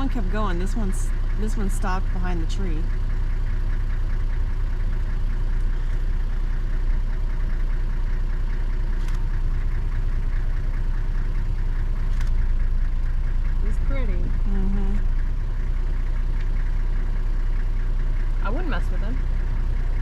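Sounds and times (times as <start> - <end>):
vehicle engine idling: 0.0 - 20.0.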